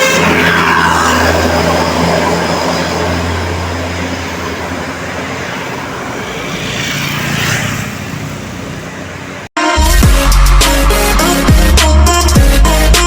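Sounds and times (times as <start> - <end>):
heavy engine humming: 0.0 - 7.0
vehicle passing with road noise: 0.0 - 9.5.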